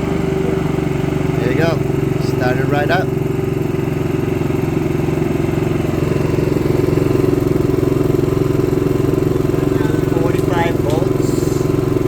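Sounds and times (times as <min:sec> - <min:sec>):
generator running: 0:00.0 - 0:12.0.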